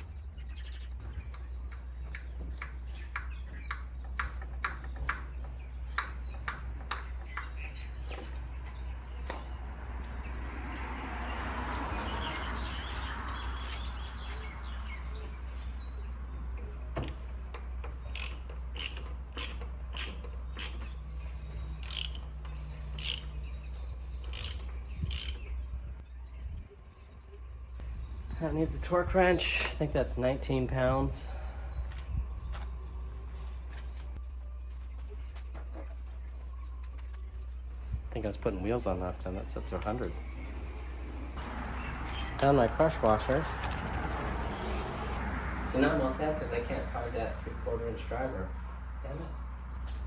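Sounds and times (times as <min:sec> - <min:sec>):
ratchet clicking: 0:18.0 - 0:20.9, 0:21.8 - 0:22.3, 0:23.0 - 0:23.4, 0:24.2 - 0:25.5.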